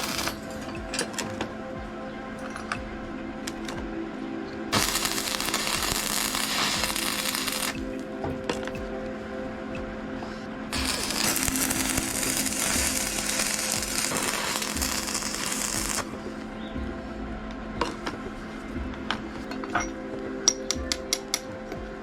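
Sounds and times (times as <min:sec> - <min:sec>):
harsh metalworking hiss: 0:00.0 - 0:01.4, 0:04.7 - 0:08.0, 0:10.7 - 0:16.2
background music: 0:00.0 - 0:22.0.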